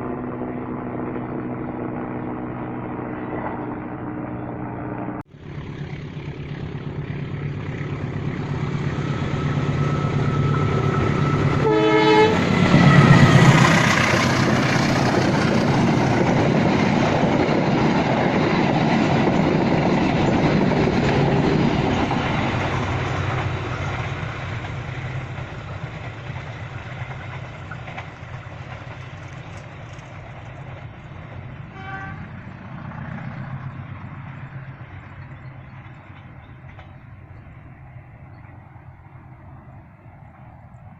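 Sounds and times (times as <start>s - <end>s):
train passing rumble: 0.0s - 40.9s
train horn blast: 9.3s - 13.9s, 31.7s - 32.5s.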